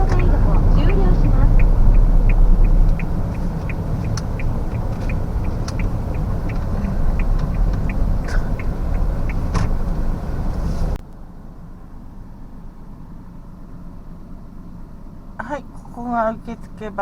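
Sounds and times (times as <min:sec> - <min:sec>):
turn signal ticking: 0:00.0 - 0:11.0
car engine and road rumble: 0:00.0 - 0:17.0.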